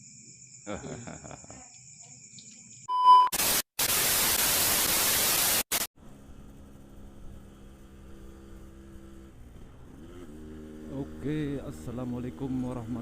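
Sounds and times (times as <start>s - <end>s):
short high beep: 2.9s - 3.4s
tv static hiss: 3.3s - 5.9s.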